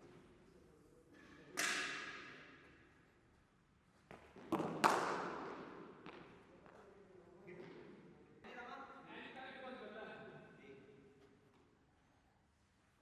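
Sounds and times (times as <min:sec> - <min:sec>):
cricket bat striking ball: 0:04.5 - 0:06.2.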